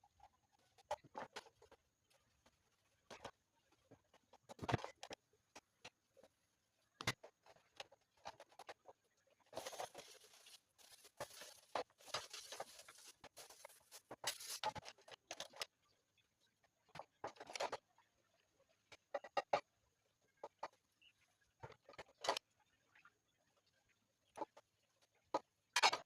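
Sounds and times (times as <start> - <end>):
objects clicking and knocking: 0.6 - 6.2
scraping and rustling: 7.1 - 15.6.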